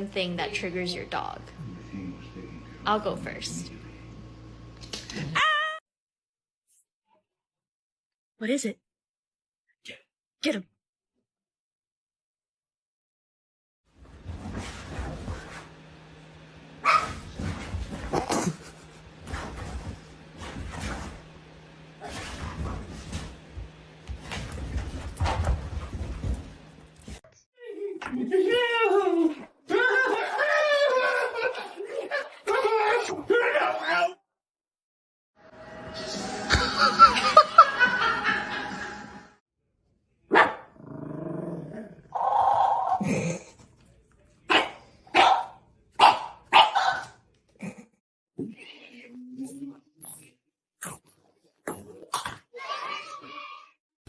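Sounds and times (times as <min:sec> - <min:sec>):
dog barking: 0:16.8 - 0:17.2, 0:40.3 - 0:40.7, 0:44.5 - 0:47.2
dog barking and whimpering: 0:16.8 - 0:17.2.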